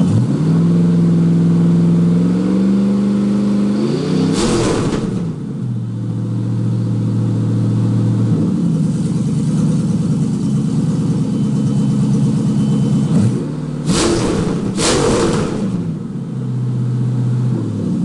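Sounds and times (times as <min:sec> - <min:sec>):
car engine idling: 0:04.4 - 0:18.0
engine throttle blip: 0:10.4 - 0:17.5.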